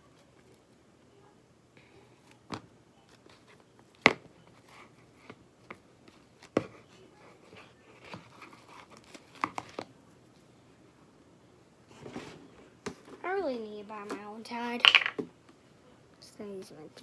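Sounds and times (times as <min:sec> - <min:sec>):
soft crinkly scraping: 0:03.0 - 0:10.6, 0:11.8 - 0:13.3.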